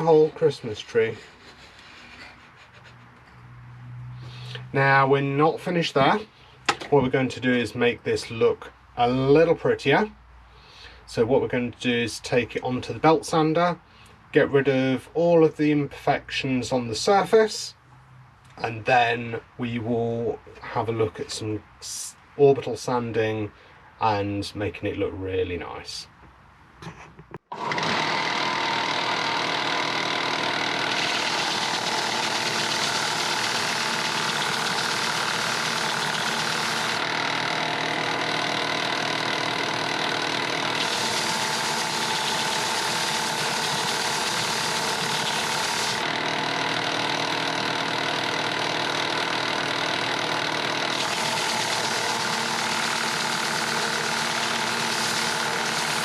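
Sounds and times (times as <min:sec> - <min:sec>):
belt sander running: 0:00.0 - 0:03.0, 0:27.5 - 0:56.0
wood pressed to sanding belt: 0:00.0 - 0:03.0, 0:27.6 - 0:56.0.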